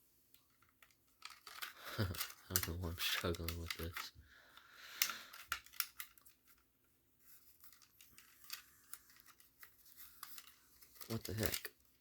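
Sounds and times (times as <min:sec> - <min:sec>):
packaging rustle: 0:07.3 - 0:12.0.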